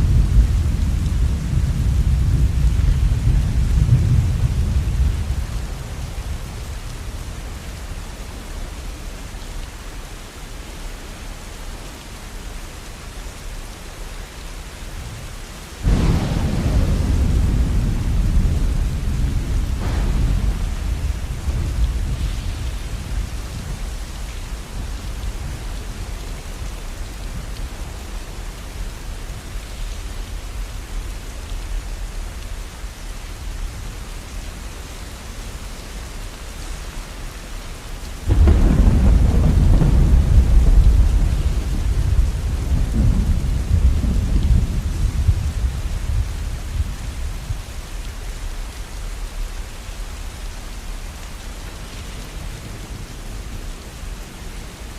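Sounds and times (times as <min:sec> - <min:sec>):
thunder rumbling: 0:00.0 - 0:07.9, 0:15.8 - 0:30.8, 0:38.2 - 0:47.6
steady rain: 0:00.0 - 0:54.9.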